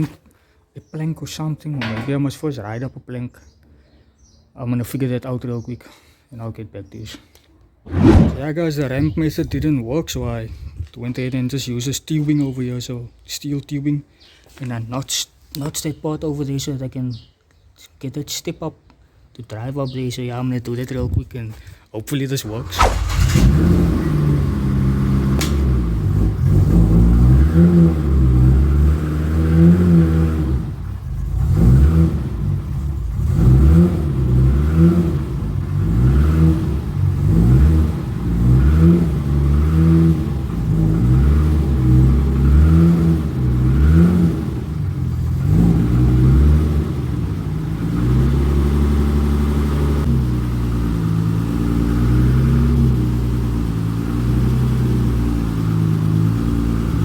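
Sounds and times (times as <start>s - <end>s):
car engine revving and idling: 22.5s - 57.0s.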